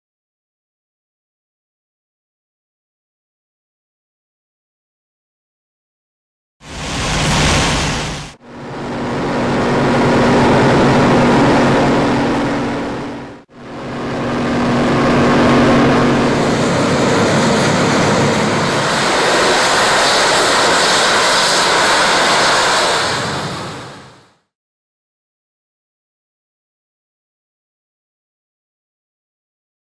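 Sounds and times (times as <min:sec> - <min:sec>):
rushing noise: 0:06.6 - 0:24.2
low droning hum: 0:06.7 - 0:18.6.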